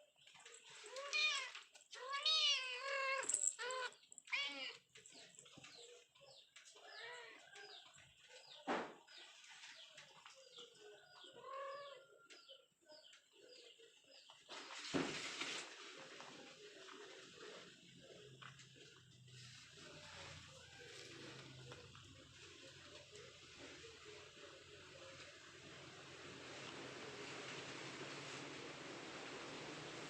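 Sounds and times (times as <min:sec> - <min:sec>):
thump: 0:08.7 - 0:09.0.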